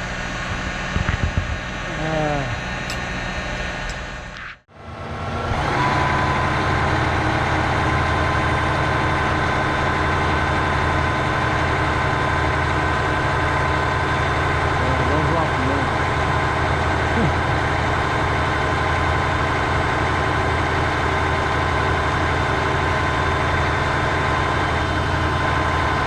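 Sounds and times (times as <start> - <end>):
thin steady whine: 0.0 - 4.7
diesel engine running: 0.0 - 26.0.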